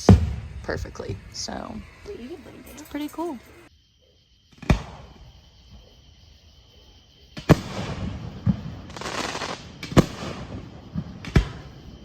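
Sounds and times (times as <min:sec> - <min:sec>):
fireworks bangs: 0:00.0 - 0:03.7, 0:04.5 - 0:05.4, 0:07.4 - 0:12.0
fireworks crackling: 0:00.0 - 0:03.7, 0:07.4 - 0:11.9.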